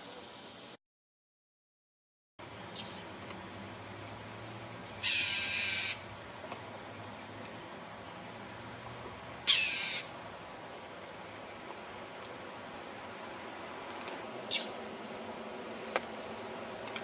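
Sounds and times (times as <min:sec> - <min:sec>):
bird squawking harshly: 0:05.0 - 0:06.0, 0:09.5 - 0:10.1
high bird chirp: 0:06.8 - 0:07.3, 0:12.7 - 0:13.1.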